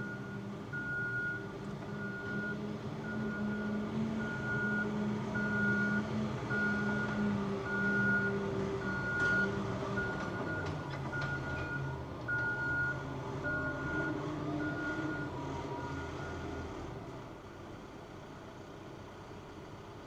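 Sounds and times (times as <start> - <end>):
reversing alarm beeping: 0.0 - 1.4, 2.0 - 16.4
engine low hum: 0.0 - 20.0.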